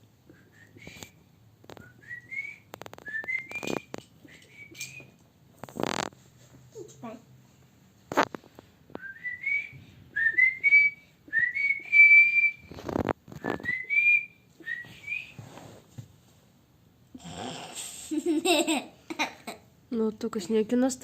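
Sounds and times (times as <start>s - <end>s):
person whistling: 0.3s - 1.2s, 1.8s - 5.2s, 9.0s - 12.8s, 13.4s - 15.4s.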